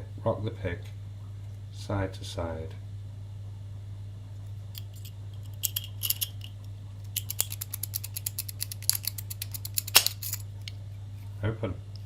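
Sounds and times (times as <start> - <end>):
lock pick clicking in padlock: 7.1 - 10.4.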